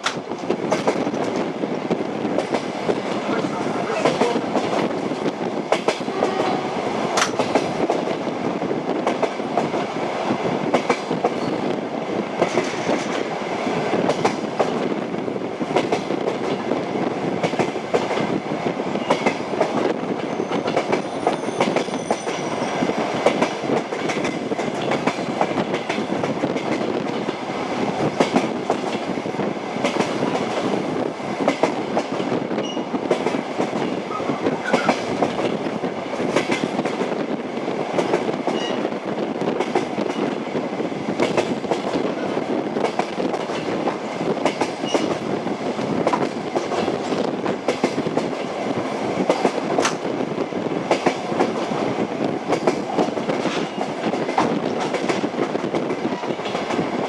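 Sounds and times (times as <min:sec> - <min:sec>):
train wheels clattering over rail joints: 0:00.0 - 0:01.5, 0:07.1 - 0:08.2, 0:13.9 - 0:14.9, 0:19.0 - 0:29.2, 0:50.8 - 0:57.0.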